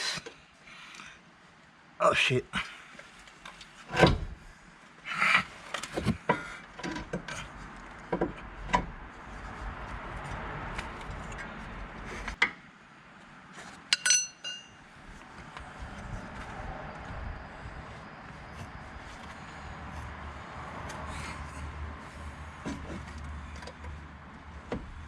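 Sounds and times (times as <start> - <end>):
metal tools knocking and clinking: 13.9 - 14.8.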